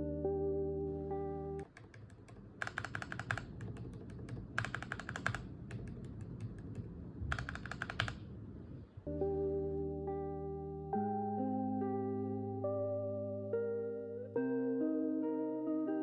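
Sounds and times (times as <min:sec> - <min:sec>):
mechanical keyboard typing: 0:01.6 - 0:08.3.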